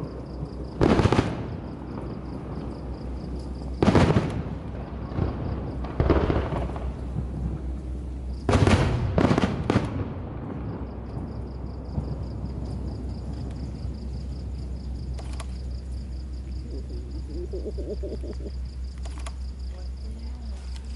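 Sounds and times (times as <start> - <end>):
fireworks bursting: 0.7 - 2.6, 3.6 - 7.8, 8.4 - 12.6.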